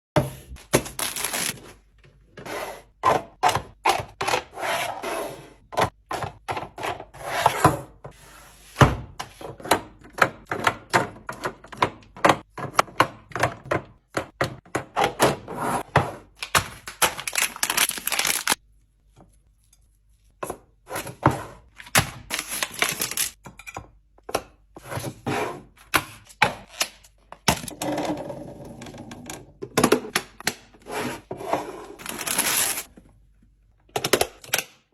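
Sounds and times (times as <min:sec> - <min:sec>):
packaging rustling: 0:00.8 - 0:01.6, 0:16.7 - 0:18.6, 0:22.3 - 0:23.4, 0:32.0 - 0:32.9.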